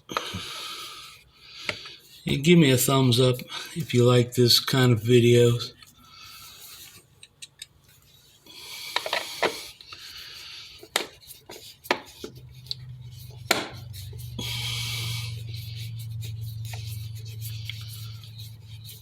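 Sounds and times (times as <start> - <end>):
low steady hum: 0.0 - 19.0
scraping and rubbing: 7.9 - 19.0.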